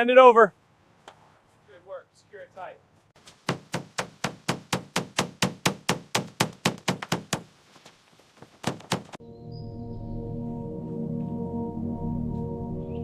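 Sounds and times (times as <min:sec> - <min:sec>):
hammer blows on wood: 0:03.3 - 0:07.5.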